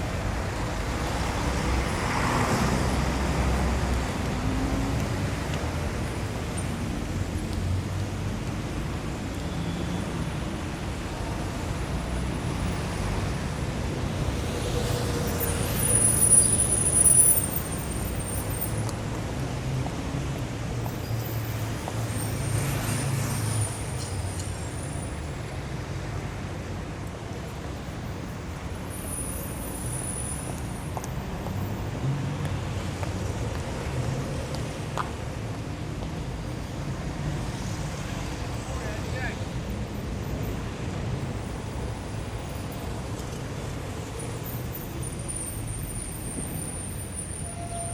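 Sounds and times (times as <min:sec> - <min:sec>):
traffic rumble: 0:00.0 - 0:47.9
high-pitched vehicle squeal: 0:15.0 - 0:18.8, 0:28.9 - 0:30.9, 0:44.4 - 0:47.9.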